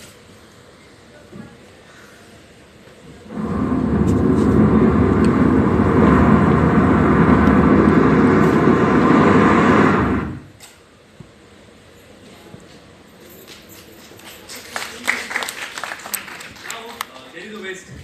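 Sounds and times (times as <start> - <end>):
imitated rocket roar: 3.3 - 10.5.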